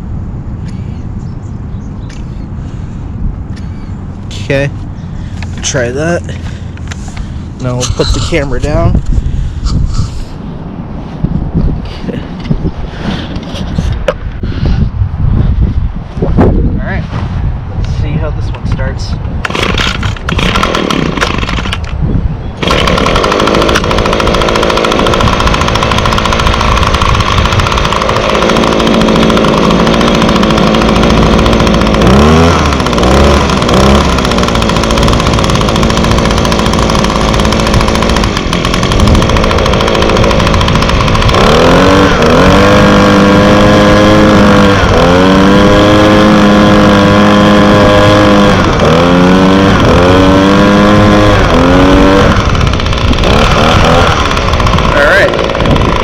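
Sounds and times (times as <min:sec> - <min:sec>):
leaf blower engine revving: 0:19.4 - 0:21.9, 0:22.6 - 0:56.0
leaf blower being pull-started: 0:19.4 - 0:22.0, 0:22.6 - 0:56.0.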